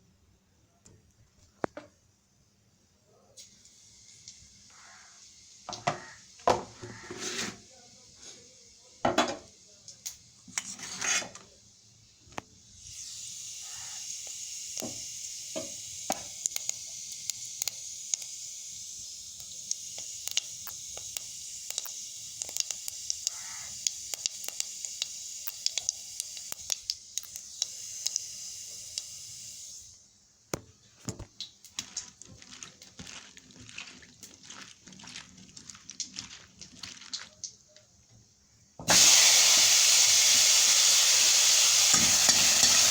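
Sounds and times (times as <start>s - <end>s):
vegetables sizzling in a pan: 3.4s - 29.9s, 38.9s - 42.9s
utensil clicking and scraping pan: 19.4s - 28.2s.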